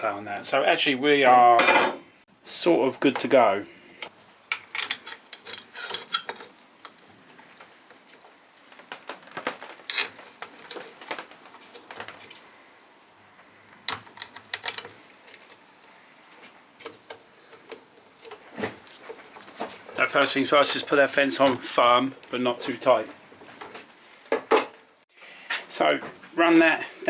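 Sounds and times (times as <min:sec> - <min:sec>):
metal parts clicking and knocking: 0:04.0 - 0:07.0, 0:09.2 - 0:12.7, 0:13.7 - 0:15.6.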